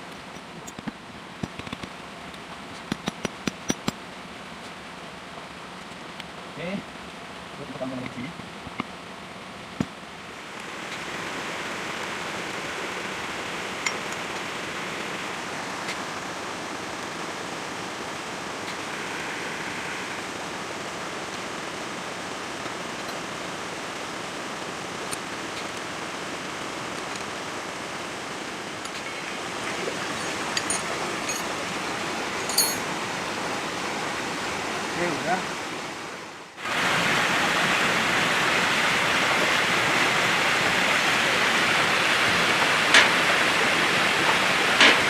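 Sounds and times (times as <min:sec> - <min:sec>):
flowing water rushing: 0:10.4 - 0:45.0.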